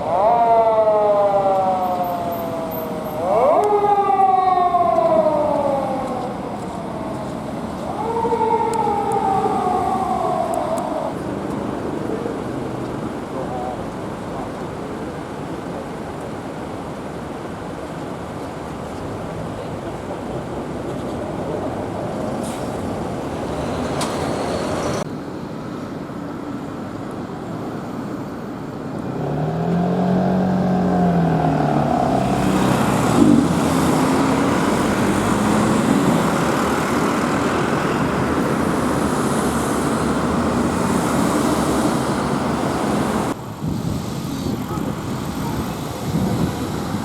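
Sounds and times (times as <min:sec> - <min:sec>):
road traffic noise: 0:00.0 - 0:47.0
engine revving: 0:29.1 - 0:43.4.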